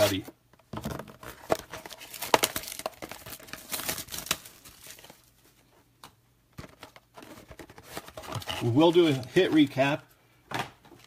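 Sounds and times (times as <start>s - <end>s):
plastic wrap tearing and crinkling: 1.3s - 5.3s.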